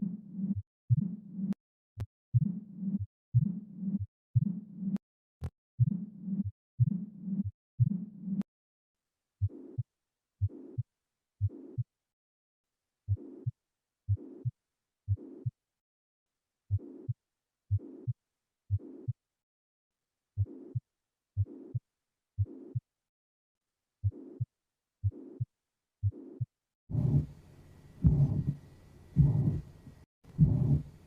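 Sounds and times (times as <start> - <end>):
heartbeat thuds with murmur: 0.0 - 1.6, 2.4 - 4.7, 5.8 - 8.2, 10.4 - 10.8, 11.4 - 11.9, 14.1 - 14.5, 15.1 - 15.4, 16.7 - 19.2, 20.4 - 20.8, 21.4 - 21.8, 22.4 - 22.8, 24.0 - 27.4, 28.0 - 31.0.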